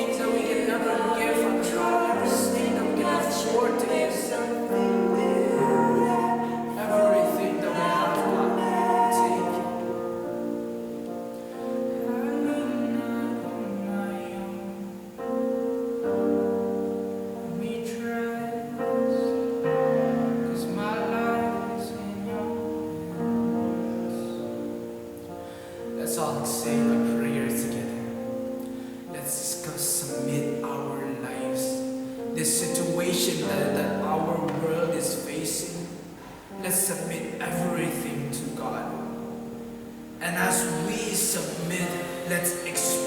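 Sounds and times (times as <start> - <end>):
voices singing worship song: 0.0 - 15.5, 16.2 - 43.0
instrumental accompaniment: 0.0 - 29.2.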